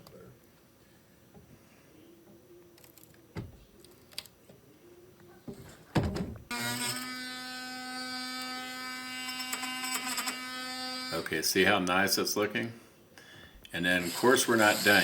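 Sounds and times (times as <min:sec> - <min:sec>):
power tool motor whining: 0:06.5 - 0:11.3, 0:13.9 - 0:15.0.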